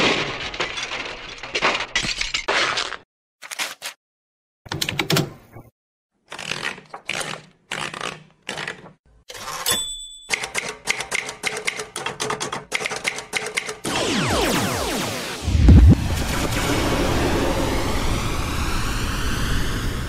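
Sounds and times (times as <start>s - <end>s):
typewriter keystrokes: 4.7s - 5.4s, 10.3s - 13.8s
typewriter bell ding: 9.5s - 10.8s
hissing with falling sweeps: 14.1s - 20.0s.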